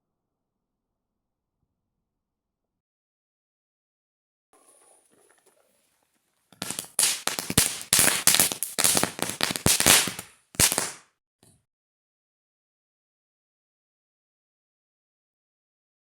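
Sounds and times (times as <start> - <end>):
firecrackers banging: 6.6 - 11.0.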